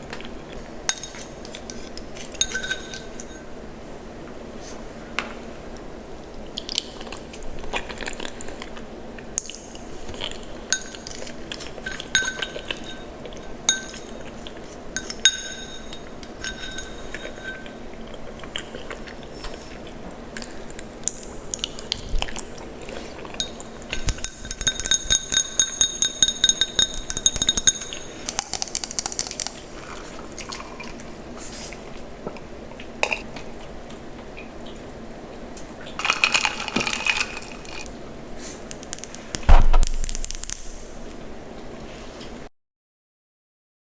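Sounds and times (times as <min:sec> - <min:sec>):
tableware clinking: 0:00.6 - 0:03.5, 0:10.7 - 0:17.9, 0:23.3 - 0:28.6.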